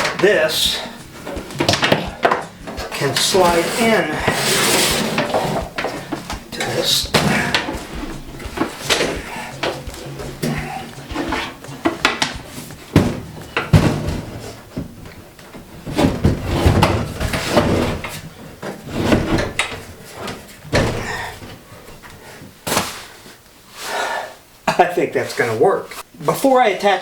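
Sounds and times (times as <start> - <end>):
wooden frame knocking: 0.0 - 15.0
wood scraping and rubbing: 0.0 - 22.5.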